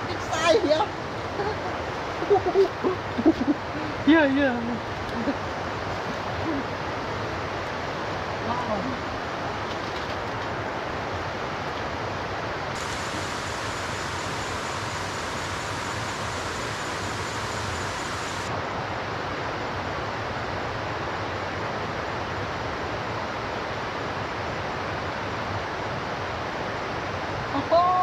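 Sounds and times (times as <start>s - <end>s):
river water rushing: 0.0s - 4.1s, 10.3s - 28.0s.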